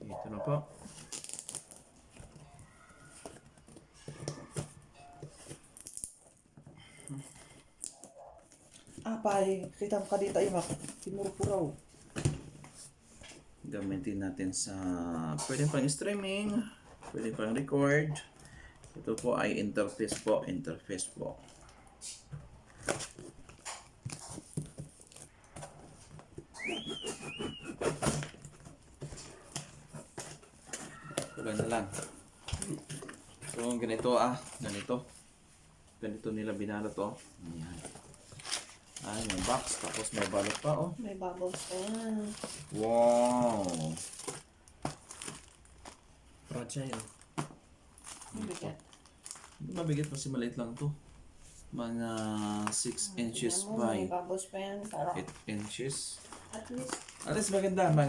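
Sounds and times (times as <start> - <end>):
package wrapping rustling: 0.7 - 6.6, 7.3 - 13.4, 22.7 - 35.1, 36.7 - 50.8, 55.2 - 58.0
plastic packaging crinkling: 0.8 - 2.4, 37.5 - 50.8, 55.2 - 58.0
high whistle-like call: 26.5 - 27.8.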